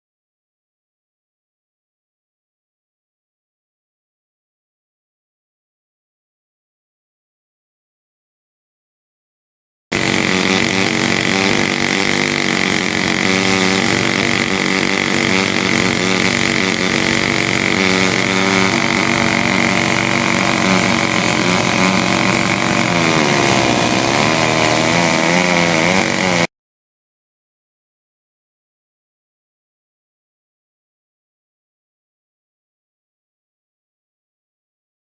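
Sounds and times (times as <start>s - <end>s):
chainsaw cutting through log: 9.9s - 26.5s.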